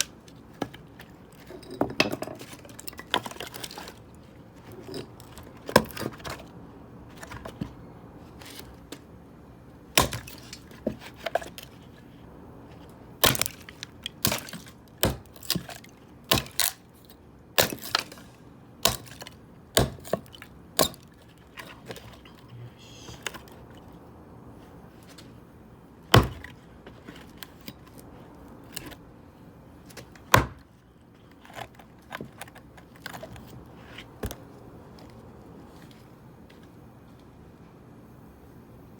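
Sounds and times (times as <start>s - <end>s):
axe splitting firewood: 0.0s - 6.5s, 9.8s - 11.7s, 12.8s - 22.2s, 26.1s - 29.1s, 29.9s - 30.7s.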